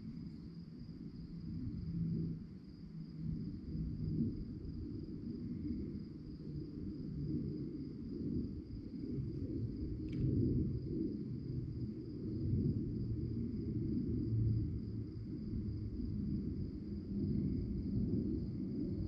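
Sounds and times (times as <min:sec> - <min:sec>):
crickets chirping: 0:00.0 - 0:19.0.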